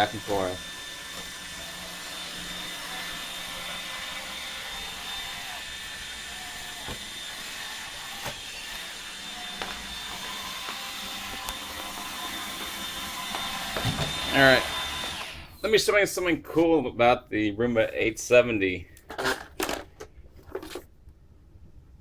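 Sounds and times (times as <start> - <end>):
robot vacuum whirring: 0.0 - 15.6.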